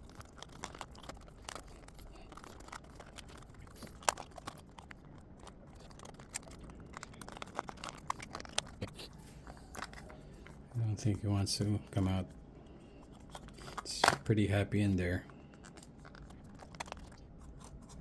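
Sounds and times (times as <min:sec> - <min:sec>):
packaging rustling: 0:13.0 - 0:18.0.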